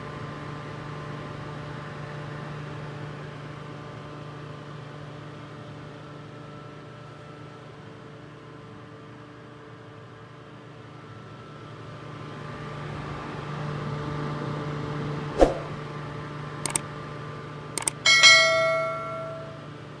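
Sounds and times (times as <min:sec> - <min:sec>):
quick clicks: 0:16.6 - 0:16.8, 0:17.8 - 0:18.0
bell-like ding: 0:17.8 - 0:19.7.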